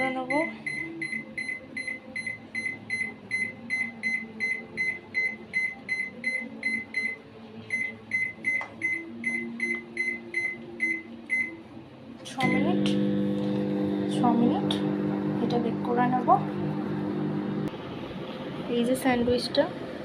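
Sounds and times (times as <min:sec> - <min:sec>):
low steady hum: 0:12.4 - 0:20.0.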